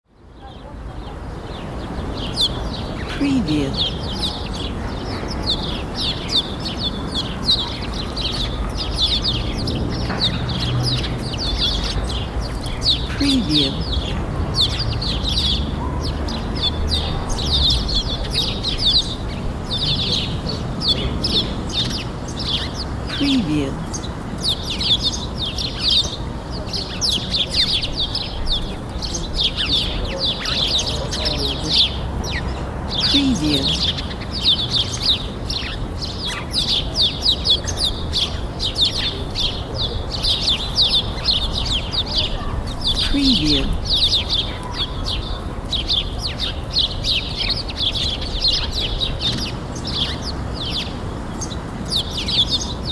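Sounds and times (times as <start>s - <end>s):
low rumble of city traffic: 0.0s - 52.9s
small songbirds chirping: 0.1s - 52.9s.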